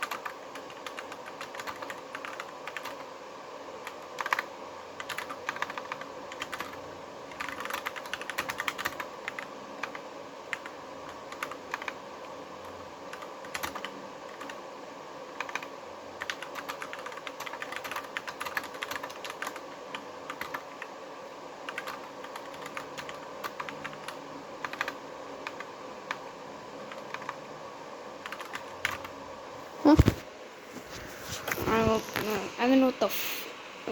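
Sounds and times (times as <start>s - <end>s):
faint background hum: 0.0s - 33.9s
keyboard typing clicks: 7.4s - 10.7s, 21.7s - 26.2s.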